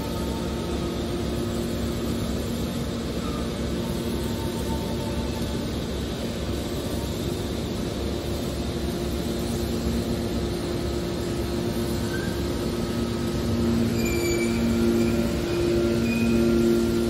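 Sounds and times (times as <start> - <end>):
scrap baler mechanical hum: 0.0 - 17.0
faint high squeals: 12.0 - 17.0.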